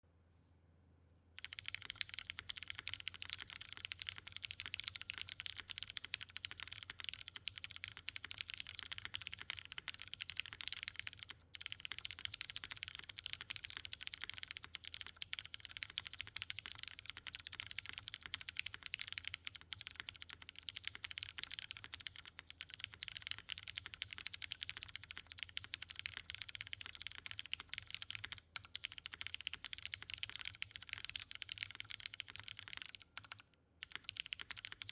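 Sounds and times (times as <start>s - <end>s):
fast mechanical keyboard typing: 1.4s - 34.9s.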